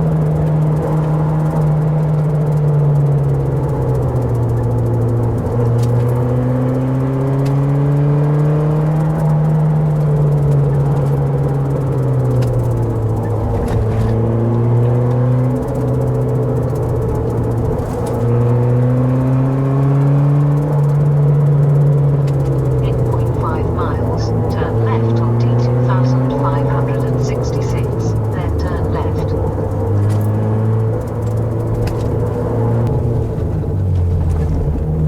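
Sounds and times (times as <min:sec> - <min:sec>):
car engine accelerating: 0:00.0 - 0:35.0.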